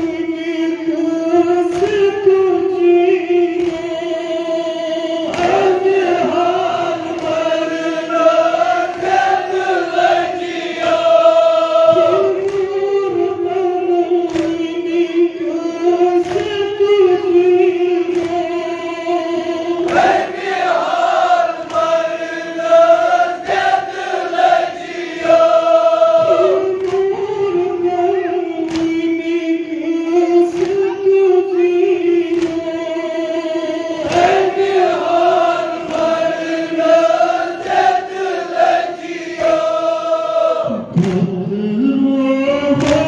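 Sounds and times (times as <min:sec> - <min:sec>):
group of voices chanting: 0:03.6 - 0:12.7, 0:18.2 - 0:27.0, 0:33.9 - 0:41.2.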